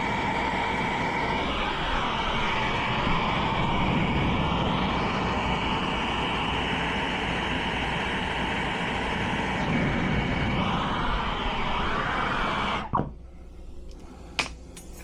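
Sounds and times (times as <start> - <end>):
torch flame hissing: 0.0 - 15.0.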